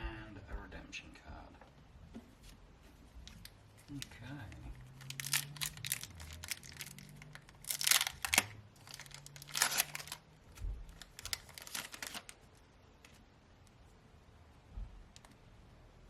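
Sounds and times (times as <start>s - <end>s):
foil card pack tearing: 4.8s - 10.2s, 10.9s - 12.4s.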